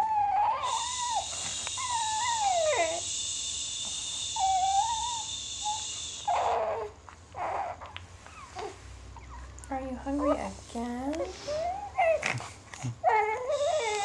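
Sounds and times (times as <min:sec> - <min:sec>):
newborn baby whimpering: 0:00.0 - 0:03.1, 0:04.3 - 0:09.5, 0:11.2 - 0:14.0.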